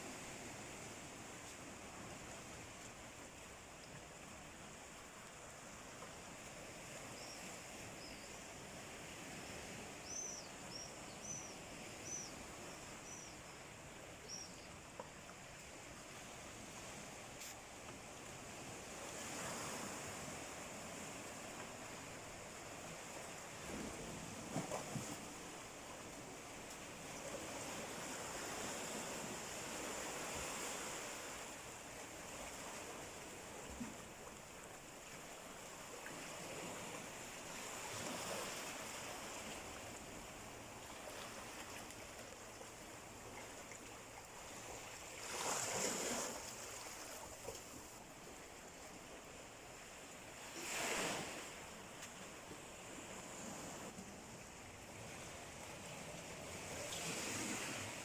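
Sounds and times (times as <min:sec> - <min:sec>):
surf waves washing on shore: 0:00.0 - 0:58.0
waves breaking: 0:00.0 - 0:58.0.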